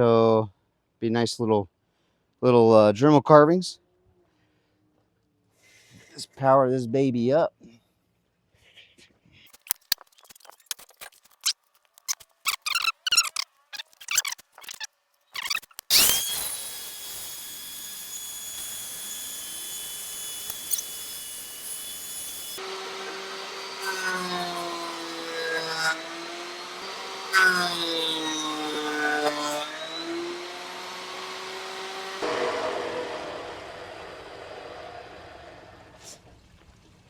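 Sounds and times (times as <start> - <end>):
planer cutting into wood: 15.4 - 36.0
electric planer running: 15.9 - 36.0.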